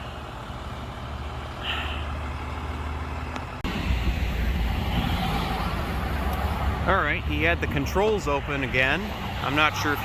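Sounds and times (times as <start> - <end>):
truck engine idling: 0.0 - 10.0.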